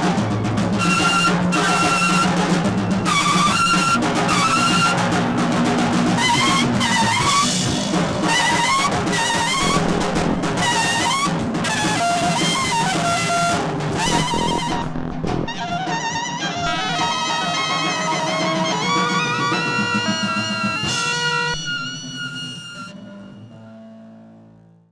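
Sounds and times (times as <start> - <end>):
sustained tones: 0.0 - 15.8, 16.6 - 18.4
horn sliding phrases: 0.0 - 23.1
drums and percussion: 0.0 - 23.6.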